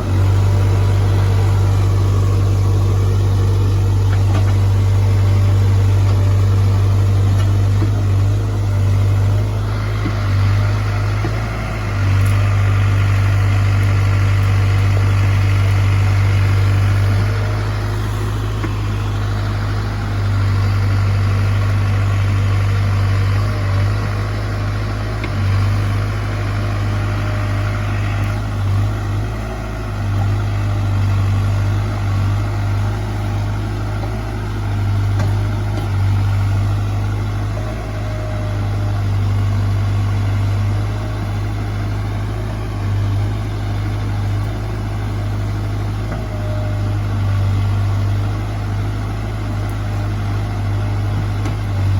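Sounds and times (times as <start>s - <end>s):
diesel engine running steadily: 0.0s - 51.9s.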